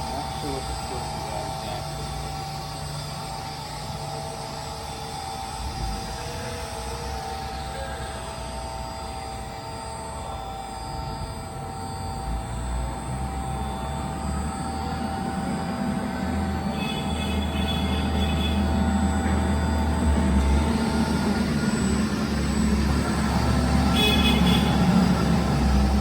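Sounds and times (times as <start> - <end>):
electric motor whine: 0.0 - 26.0
low hum: 0.0 - 26.0.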